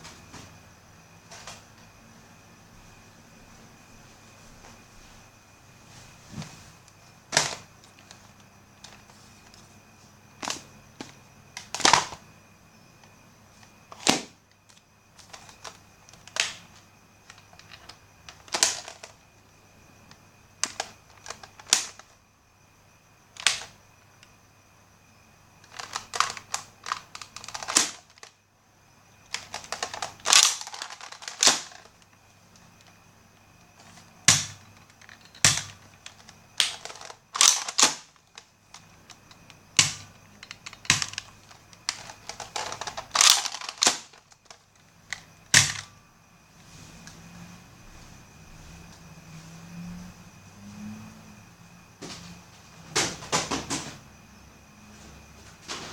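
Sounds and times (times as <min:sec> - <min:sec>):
toy blaster clicks and shots: 0:29.4 - 0:31.9, 0:35.4 - 0:38.1, 0:41.9 - 0:44.2.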